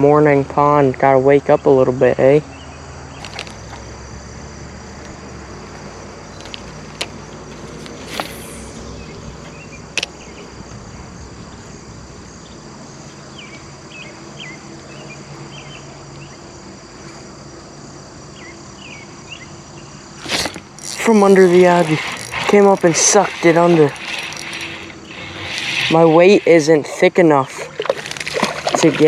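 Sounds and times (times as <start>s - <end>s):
insects chirring: 0.0s - 29.0s
brief hiss: 7.8s - 9.1s.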